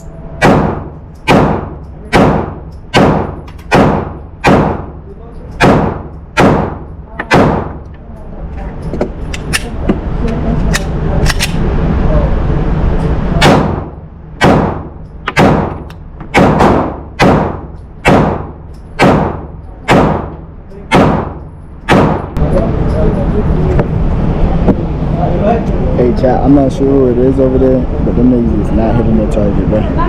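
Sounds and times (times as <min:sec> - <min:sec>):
pistol shots: 0:00.4 - 0:05.0, 0:05.6 - 0:07.8, 0:13.4 - 0:22.4.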